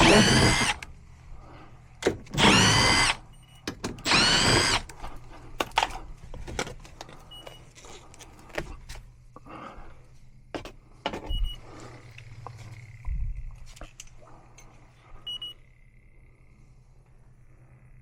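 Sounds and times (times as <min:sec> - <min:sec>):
cordless drill whirring: 0:00.0 - 0:01.0, 0:02.2 - 0:03.3, 0:04.0 - 0:05.0
clicks and knocks of handling tools: 0:03.5 - 0:09.0.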